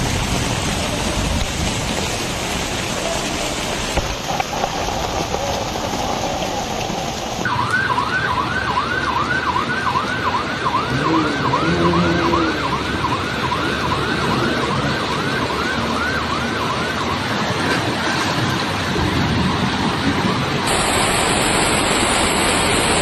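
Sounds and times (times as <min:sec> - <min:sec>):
rain: 0:00.0 - 0:23.0
siren yelping: 0:07.5 - 0:17.6
steady rushing noise: 0:17.3 - 0:23.0.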